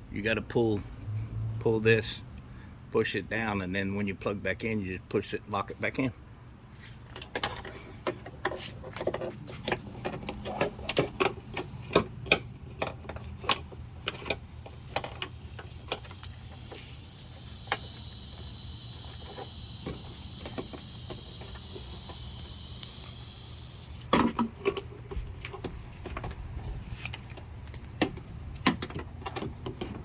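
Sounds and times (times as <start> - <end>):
steady high-pitched buzz: 16.4 - 24.6.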